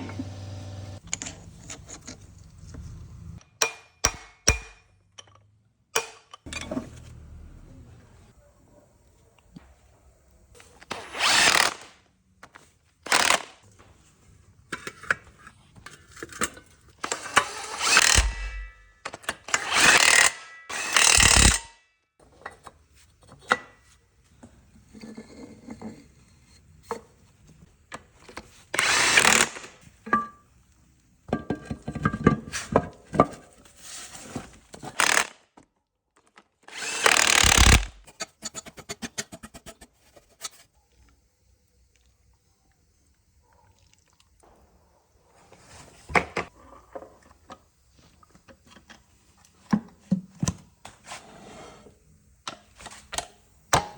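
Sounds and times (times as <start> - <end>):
power tool bursts: 36.7 - 38.0.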